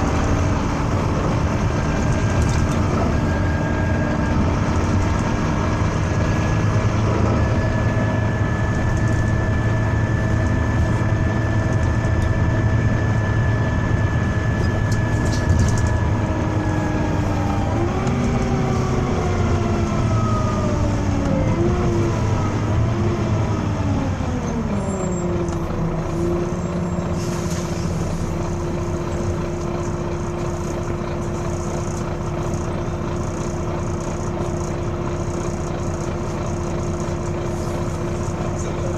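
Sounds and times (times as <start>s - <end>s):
bus engine rumble with whine: 0.0s - 38.9s
wavering wailing noise: 0.2s - 25.2s.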